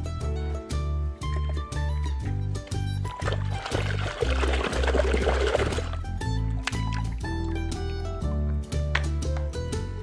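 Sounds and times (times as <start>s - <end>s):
background music with bass: 0.0s - 10.0s
water pouring: 1.2s - 7.6s.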